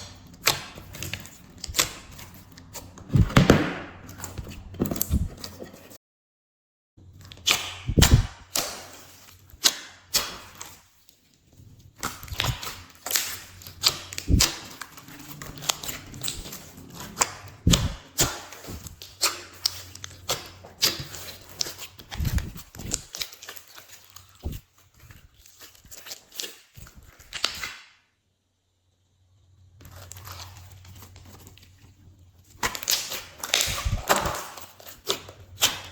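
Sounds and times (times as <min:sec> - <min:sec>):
slime squishing with sticky pops: 0:07.2 - 0:10.9, 0:11.9 - 0:27.7, 0:29.9 - 0:35.9.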